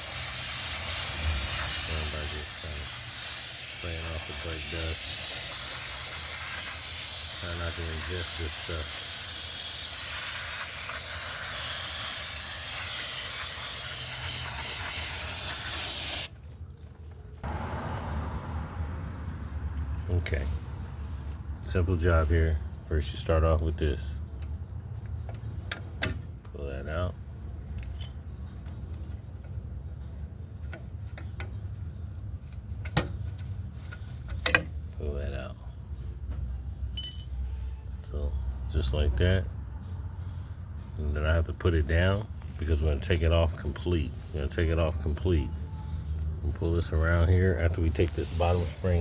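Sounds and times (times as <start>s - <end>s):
spray hissing: 0.0s - 16.3s.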